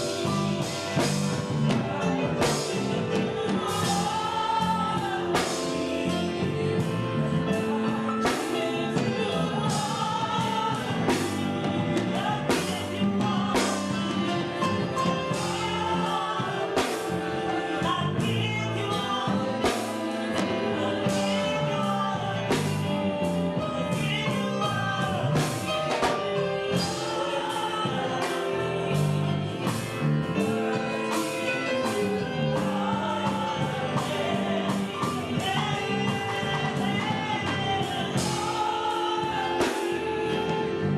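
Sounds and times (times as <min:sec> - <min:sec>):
band with steady drum beat: 0:00.0 - 0:40.9
choir singing gospel music: 0:00.0 - 0:40.9.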